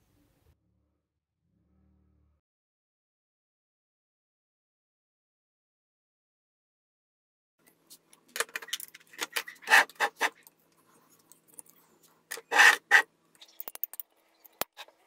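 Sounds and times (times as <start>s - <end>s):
small hard objects clicking: 13.4s - 14.7s.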